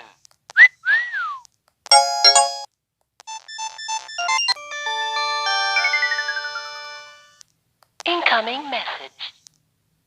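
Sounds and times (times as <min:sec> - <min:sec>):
phone electronic sound effects: 0:01.9 - 0:02.7, 0:03.3 - 0:07.4.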